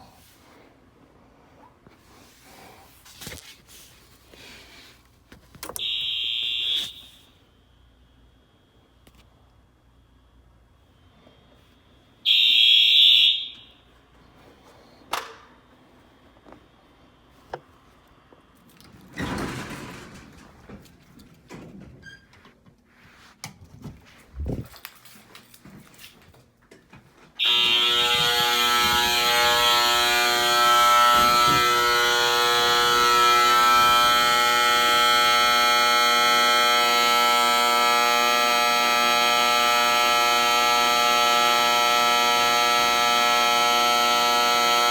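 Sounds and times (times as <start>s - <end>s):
fire alarm horns: 5.6s - 7.5s, 11.8s - 14.3s, 27.4s - 44.9s
steady piercing tone: 5.8s - 7.5s, 12.0s - 14.0s, 27.4s - 44.9s.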